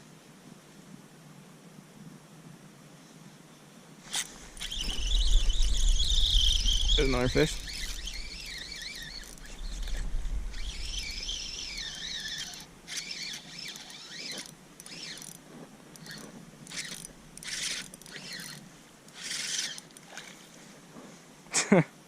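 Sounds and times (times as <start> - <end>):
high wavering whine: 4.1 - 20.2.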